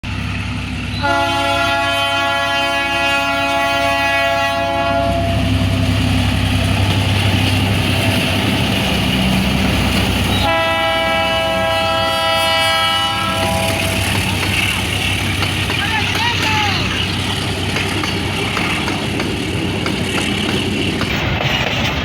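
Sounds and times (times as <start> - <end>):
train running drone: 0.0 - 22.0
train horn blast: 1.0 - 5.6, 10.4 - 14.2.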